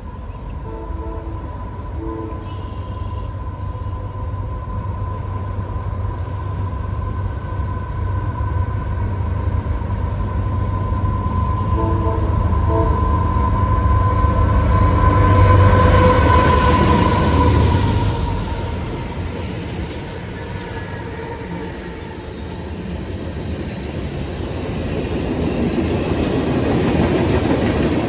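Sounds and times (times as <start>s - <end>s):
diesel locomotive engine rumble: 0.0s - 28.0s
train horn notes: 0.6s - 3.9s, 11.5s - 18.6s.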